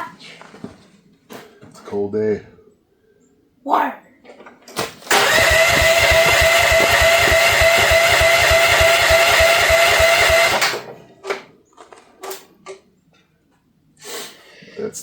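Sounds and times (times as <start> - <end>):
engine cranking with starter whine: 5.0 - 11.0.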